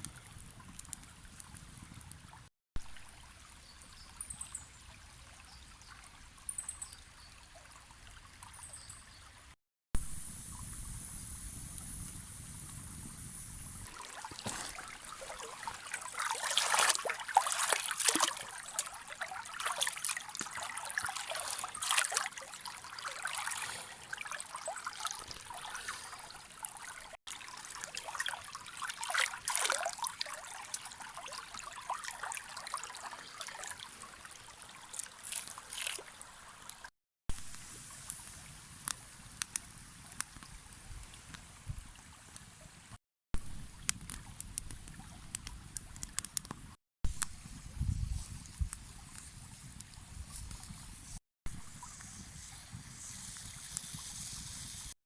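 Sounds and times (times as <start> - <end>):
stream babbling over rocks: 13.9 - 36.7.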